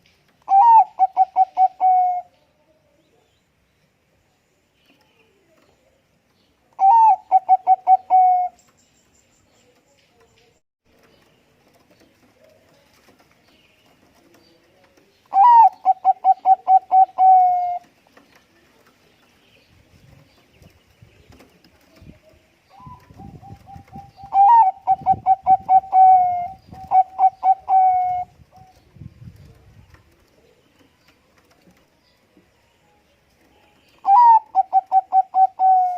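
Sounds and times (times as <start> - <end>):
dove cooing: 0.5 - 2.3, 6.8 - 8.6, 15.3 - 17.9, 22.7 - 28.7, 34.0 - 35.9.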